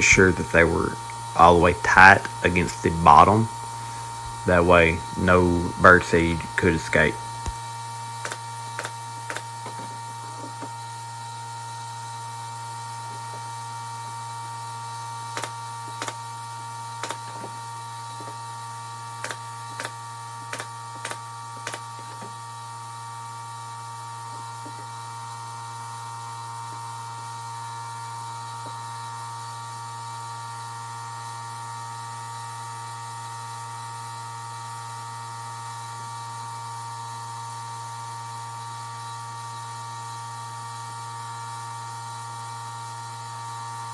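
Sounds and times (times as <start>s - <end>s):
steady hum: 0.0s - 9.4s.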